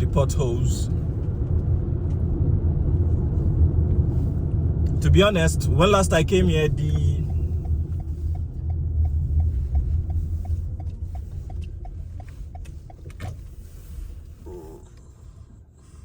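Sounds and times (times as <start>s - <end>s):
car engine and road rumble: 0.0s - 16.0s
light regular ticking: 6.3s - 14.3s.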